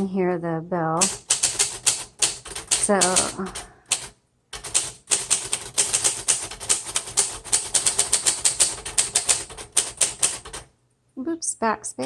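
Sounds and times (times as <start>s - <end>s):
manual typewriter key strikes: 1.0s - 10.6s.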